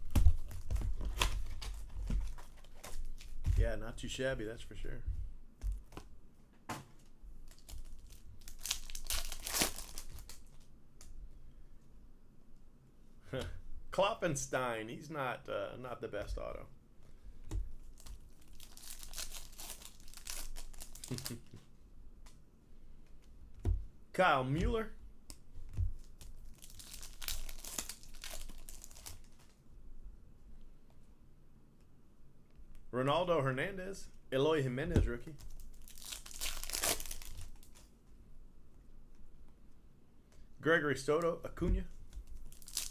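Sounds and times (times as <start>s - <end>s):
card pack wrapper crinkling and tearing: 7.4s - 10.7s, 17.9s - 21.6s, 26.0s - 29.6s, 35.3s - 37.9s, 42.2s - 42.9s.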